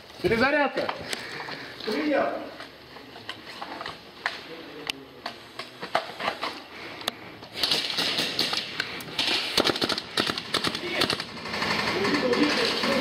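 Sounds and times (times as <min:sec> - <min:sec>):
rapid airsoft gunfire: 0:07.6 - 0:13.0.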